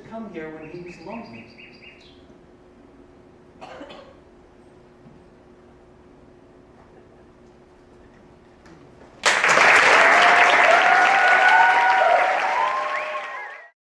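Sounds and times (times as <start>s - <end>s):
audience cheering: 9.2s - 13.8s
audience clapping: 9.2s - 13.8s.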